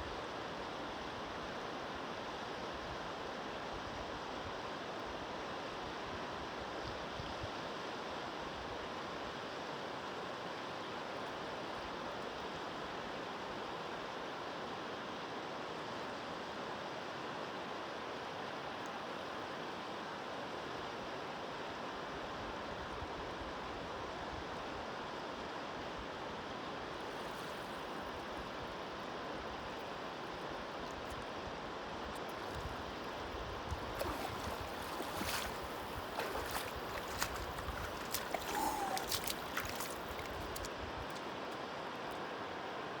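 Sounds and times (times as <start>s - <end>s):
river rushing: 32.4s - 40.7s.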